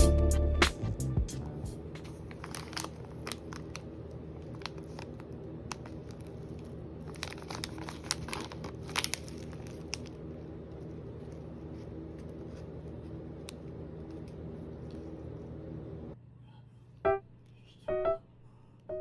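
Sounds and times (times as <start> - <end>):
steady low hum: 0.0 - 19.0
packaging crinkling: 2.0 - 15.5.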